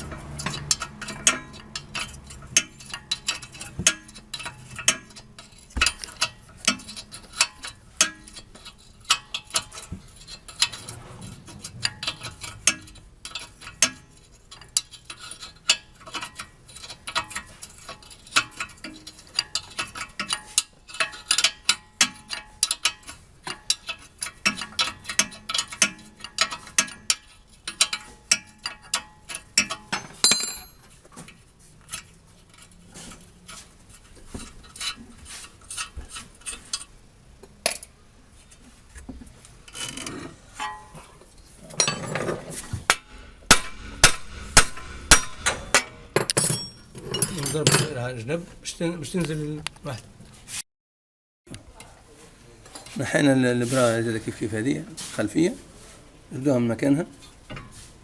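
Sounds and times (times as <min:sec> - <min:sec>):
metal tools clinking: 0:00.0 - 0:31.0, 0:39.7 - 0:48.1.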